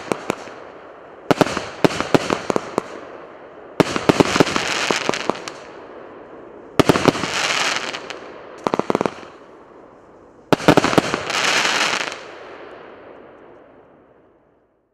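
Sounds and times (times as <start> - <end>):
firework bangs: 0.0 - 5.8, 6.7 - 9.4, 10.5 - 12.6
firework crackling: 0.0 - 12.6.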